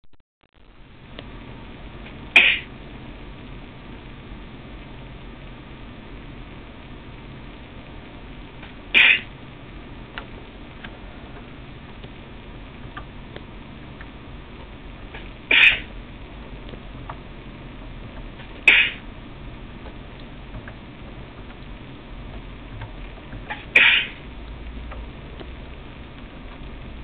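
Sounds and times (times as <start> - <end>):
short sharp sneezes: 2.4 - 2.7, 9.0 - 9.2, 15.5 - 15.8, 18.7 - 19.0, 23.8 - 24.2.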